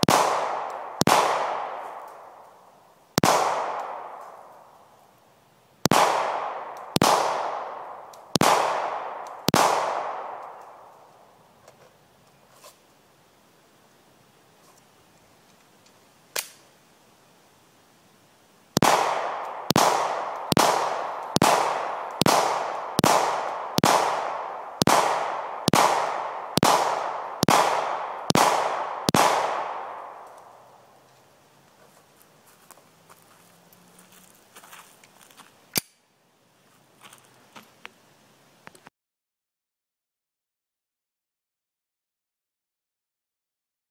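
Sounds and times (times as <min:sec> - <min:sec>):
pistol shots with ringing echo: 0:00.0 - 0:02.4, 0:03.2 - 0:04.6, 0:05.8 - 0:10.9, 0:18.8 - 0:30.6
sharp click: 0:35.8 - 0:36.0.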